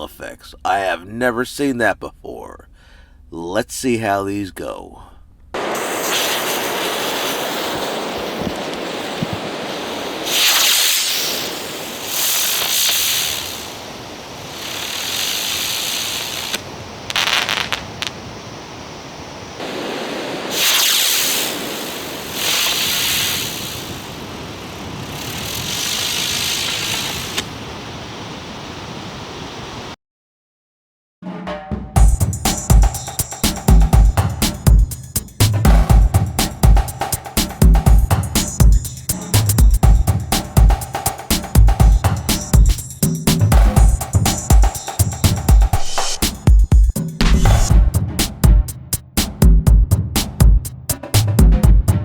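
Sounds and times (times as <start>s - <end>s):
fireworks crackling: 5.6s - 28.0s
fireworks hissing: 5.6s - 29.9s, 36.0s - 46.7s.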